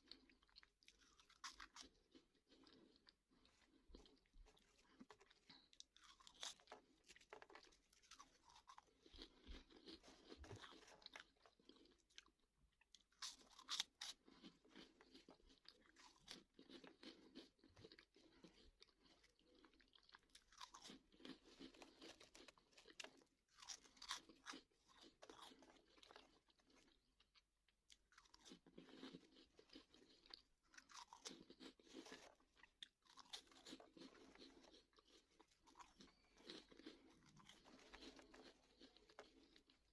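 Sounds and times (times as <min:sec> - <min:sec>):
crunching and chewing snacks: 0:00.0 - 0:39.9.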